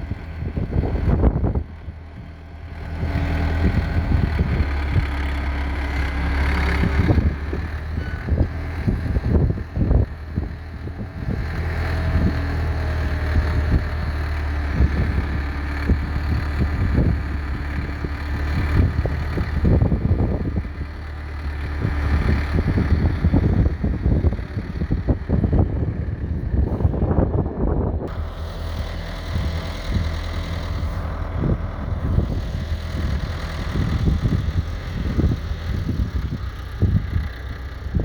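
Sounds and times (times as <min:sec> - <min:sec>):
tractor diesel engine running: 0:00.0 - 0:38.0.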